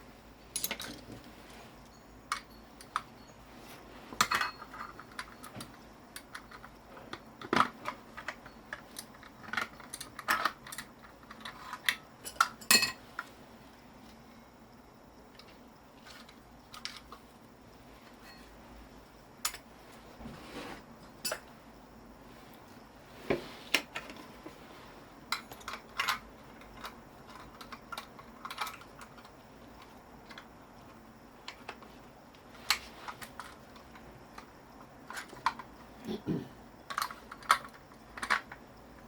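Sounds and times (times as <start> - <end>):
metal parts and tools clinking: 0.5 - 1.3, 4.2 - 6.8, 7.4 - 13.0, 25.3 - 29.3.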